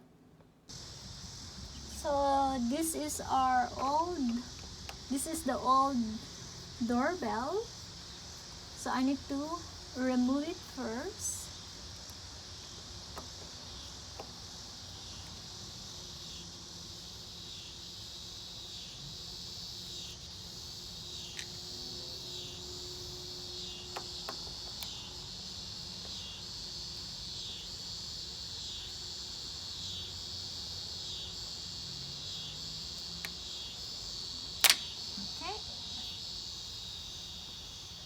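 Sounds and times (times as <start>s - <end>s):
insects chirring: 0.7s - 38.0s.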